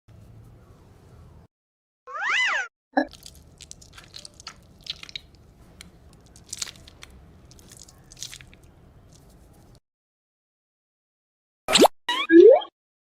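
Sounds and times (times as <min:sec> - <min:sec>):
soft irregular crunches: 0:03.1 - 0:09.8.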